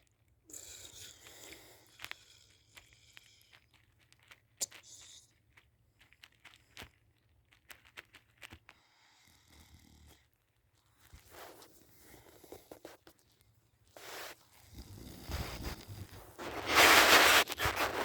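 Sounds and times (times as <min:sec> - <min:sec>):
small clicks and rustles: 0:00.0 - 0:00.4, 0:01.1 - 0:18.0.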